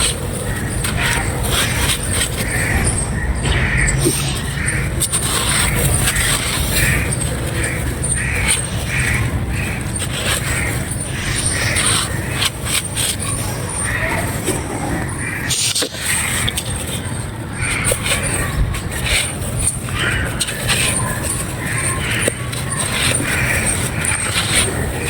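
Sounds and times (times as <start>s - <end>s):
steady low rumble: 0.0s - 15.5s
animal calls: 0.0s - 25.0s
dry clay crunching: 0.0s - 25.0s.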